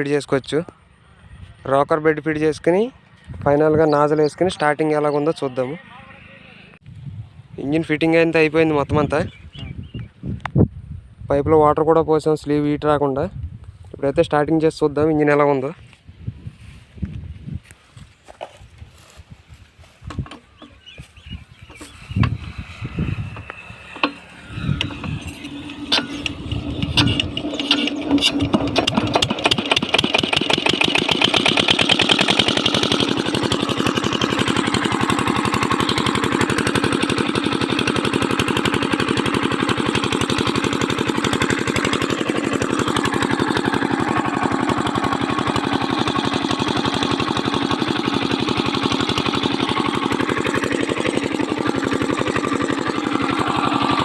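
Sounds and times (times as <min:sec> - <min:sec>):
diesel engine starting: 0:20.3 - 0:54.0.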